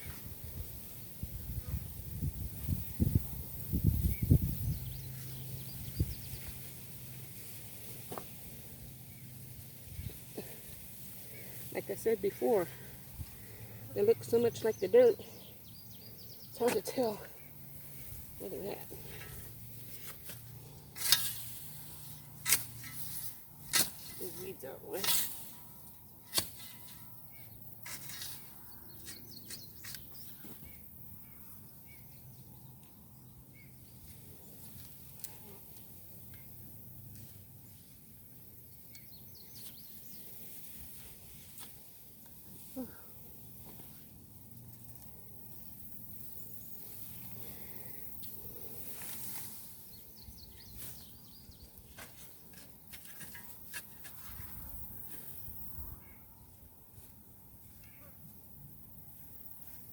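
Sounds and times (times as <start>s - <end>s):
digging in garden soil: 4.7s - 59.9s
tool scraping soil: 16.4s - 30.8s, 48.6s - 55.4s.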